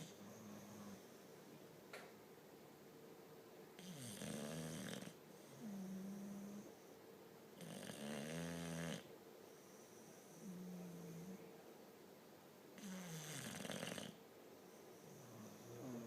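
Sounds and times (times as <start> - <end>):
dogs snoring: 0.0 - 1.3, 3.8 - 6.9, 7.6 - 11.5, 12.8 - 16.0.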